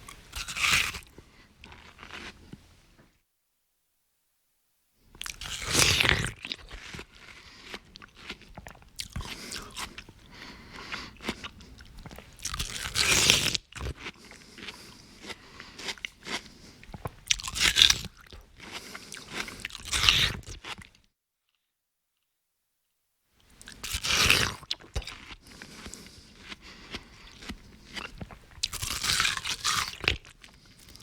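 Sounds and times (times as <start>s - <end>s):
person biting watermelon: 0.0s - 2.6s, 5.2s - 10.2s, 10.9s - 20.6s, 23.6s - 31.0s
wet chewing and smacking: 5.2s - 21.0s, 23.6s - 31.0s.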